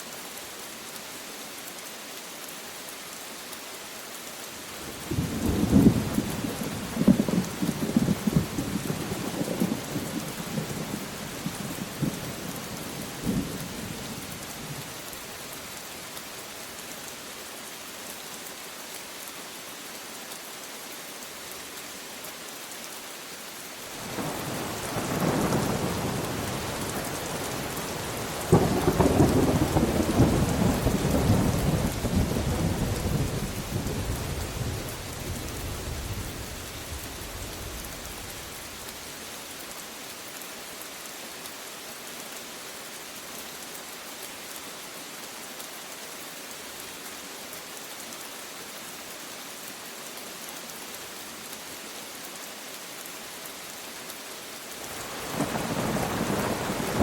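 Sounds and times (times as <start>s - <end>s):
steady rain: 0.0s - 57.0s
thunder rumbling: 28.2s - 38.6s, 55.0s - 57.0s.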